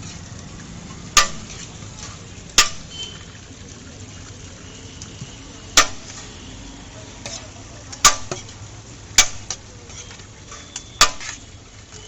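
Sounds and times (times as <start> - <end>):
metal cookware clanking: 0.9 - 2.9, 9.2 - 11.5.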